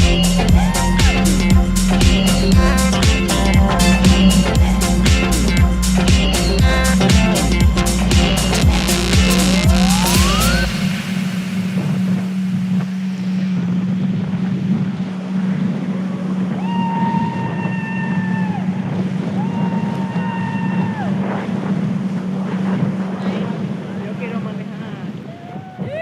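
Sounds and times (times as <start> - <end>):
high-pitched tone: 0.0 - 14.4
jet ski engine running: 0.0 - 25.3.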